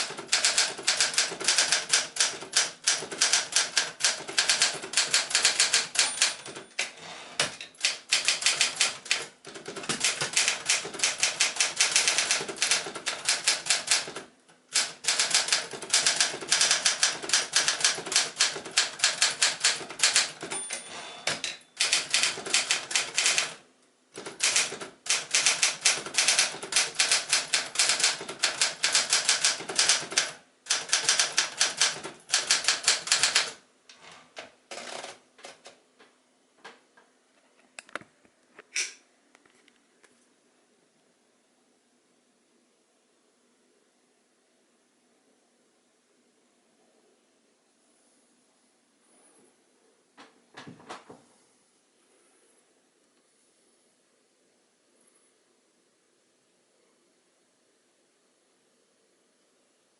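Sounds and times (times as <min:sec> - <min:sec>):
manual typewriter key strikes: 0:00.0 - 0:23.6, 0:24.2 - 0:33.6.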